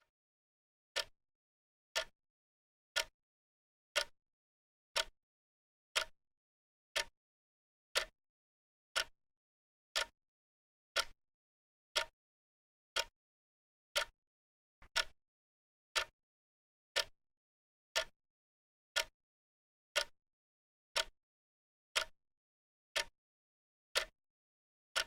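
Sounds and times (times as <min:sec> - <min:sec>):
clock ticking: 0:11.0 - 0:11.2, 0:14.9 - 0:15.2.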